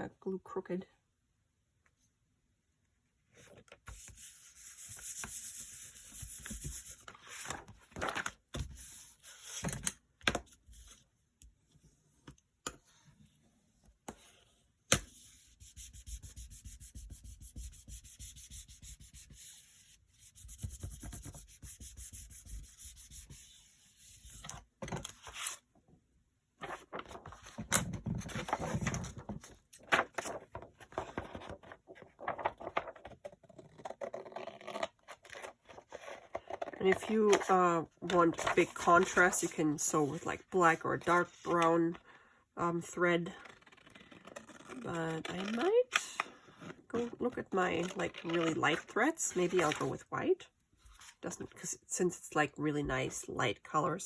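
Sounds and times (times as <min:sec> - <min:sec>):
paper rubbed by hand: 0:15.3 - 0:24.4.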